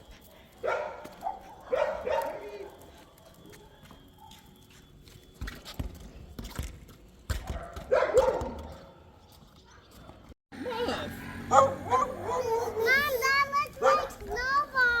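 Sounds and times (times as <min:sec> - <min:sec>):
dog barking: 0:00.6 - 0:04.5, 0:07.4 - 0:09.0, 0:11.1 - 0:13.0, 0:13.7 - 0:14.5.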